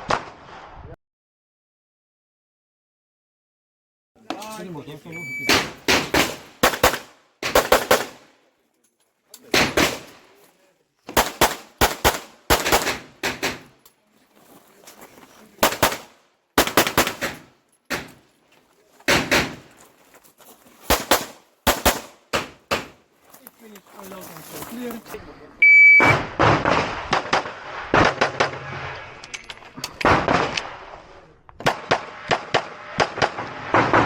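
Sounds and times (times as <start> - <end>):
pistol shots: 5.4 - 8.3, 9.5 - 10.2, 11.1 - 13.7, 15.6 - 18.2, 19.1 - 19.7, 20.9 - 23.0.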